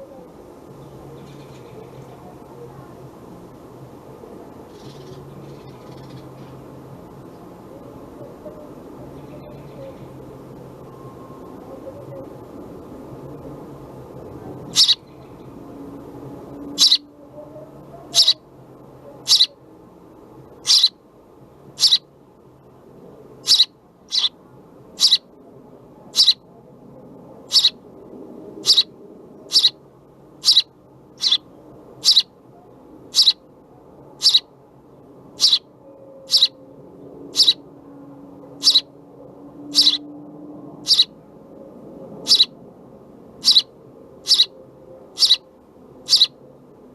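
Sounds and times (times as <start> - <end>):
faint low background noise: 0.0 - 46.9
sparrow chirping: 0.8 - 2.4, 4.7 - 6.4, 9.1 - 10.2, 14.7 - 15.6, 16.6 - 18.4, 19.1 - 19.6, 20.6 - 21.0, 21.6 - 22.1, 23.4 - 25.3, 26.1 - 26.4, 27.4 - 27.8, 28.6 - 32.3, 33.0 - 33.4, 34.1 - 34.5, 35.3 - 36.6, 37.2 - 37.7, 38.5 - 38.9, 39.7 - 40.1, 40.8 - 41.2, 42.2 - 42.6, 43.4 - 44.5, 45.1 - 46.4.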